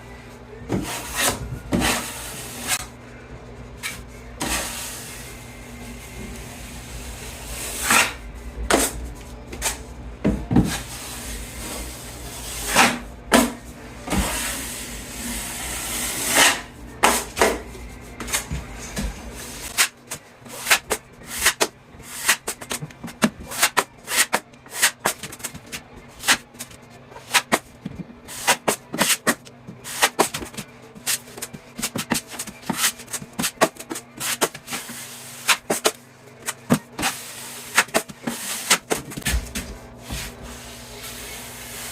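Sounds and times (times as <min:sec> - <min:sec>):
low steady hum: 0:00.0 - 0:41.9
taping knife scraping wall: 0:20.5 - 0:26.5.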